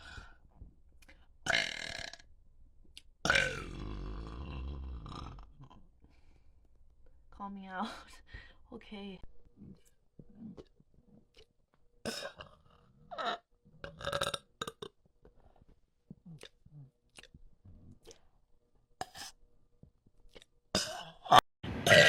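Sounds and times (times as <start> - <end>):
person burping: 1.5 - 2.3, 3.2 - 5.9, 12.0 - 15.0, 20.7 - 22.0.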